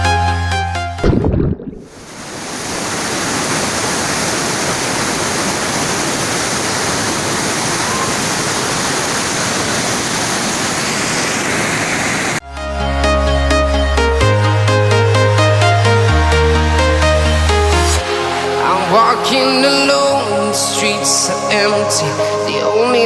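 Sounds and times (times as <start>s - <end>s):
river water rushing: 1.7s - 12.4s.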